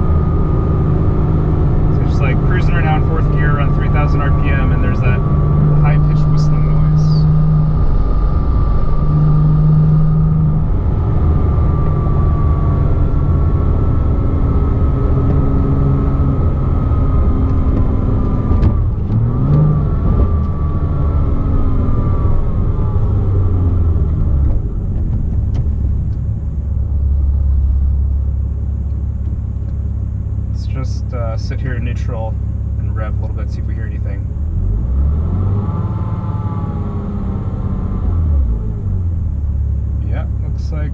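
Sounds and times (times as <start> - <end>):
high-pitched whine: 0.0 - 18.2
car engine running: 0.0 - 40.9.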